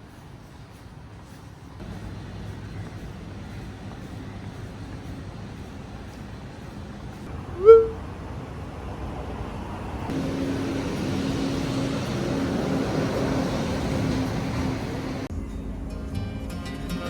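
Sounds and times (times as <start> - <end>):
road traffic: 0.0 - 15.3
vehicle engine running: 1.8 - 7.5, 9.9 - 15.3.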